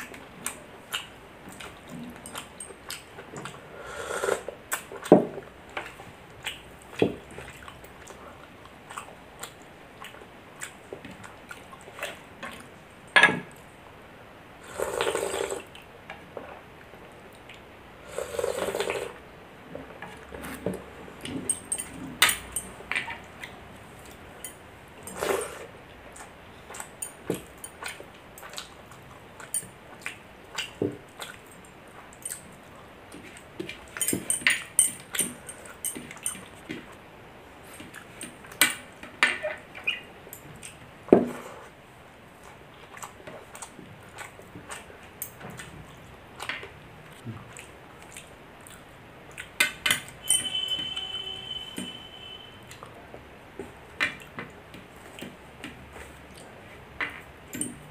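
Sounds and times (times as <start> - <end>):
wet chewing and mouth smacks: 0.4 - 3.6, 5.8 - 12.7, 26.1 - 33.9, 42.4 - 49.6
spoon clinking on plate: 49.9 - 52.4.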